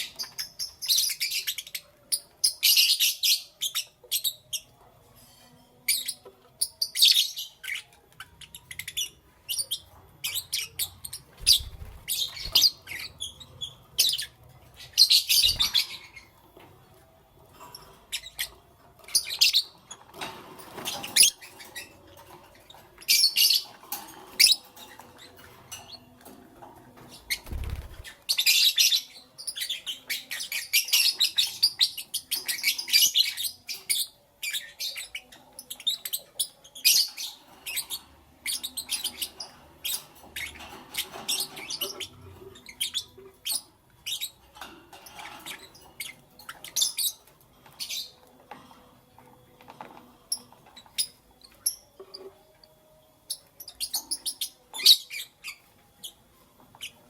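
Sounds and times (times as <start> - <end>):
birds chirping: 5.8 - 48.5.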